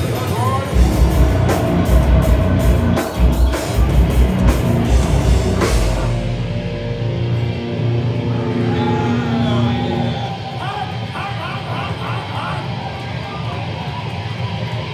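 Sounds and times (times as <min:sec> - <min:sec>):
pounding drums: 0:00.0 - 0:07.7
heavy distorted guitars: 0:00.0 - 0:14.9.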